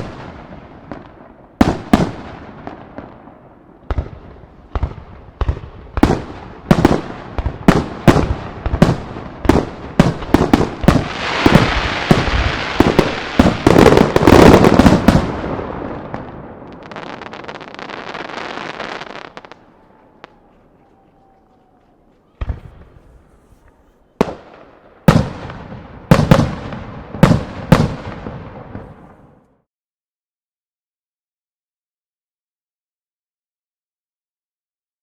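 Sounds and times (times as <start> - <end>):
firework crackling: 0.0 - 20.6.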